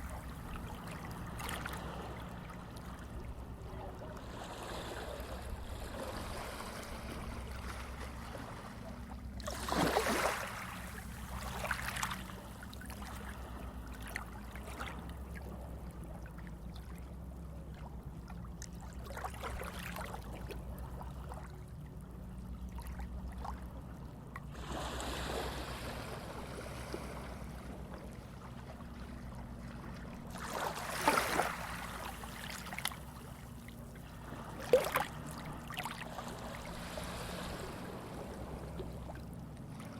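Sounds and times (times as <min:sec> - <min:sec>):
water splashing: 0:09.4 - 0:13.4, 0:30.3 - 0:39.2
sea waves washing in: 0:09.4 - 0:14.9, 0:24.5 - 0:27.7, 0:30.3 - 0:39.9.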